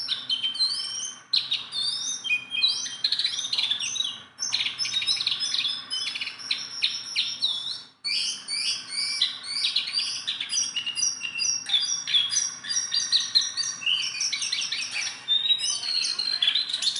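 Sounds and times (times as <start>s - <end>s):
songbird singing: 0.0s - 16.9s.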